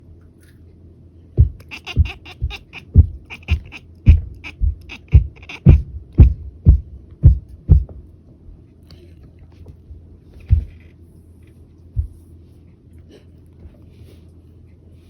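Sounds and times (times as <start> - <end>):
cat chattering chirps: 1.4 - 6.7
low thumps: 1.4 - 8.1, 10.4 - 10.8, 12.0 - 12.2.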